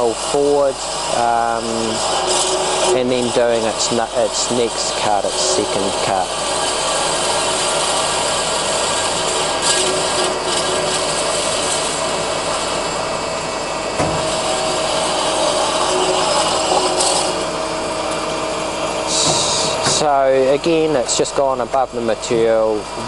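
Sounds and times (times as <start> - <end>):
bandsaw blade rasping through wood: 0.0 - 13.0, 14.2 - 17.6
machine hum: 0.0 - 23.0.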